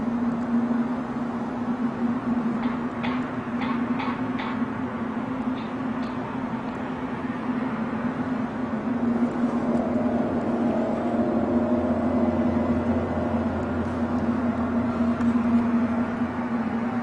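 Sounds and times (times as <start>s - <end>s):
low droning hum: 0.0s - 17.0s
deep rumble: 4.8s - 17.0s.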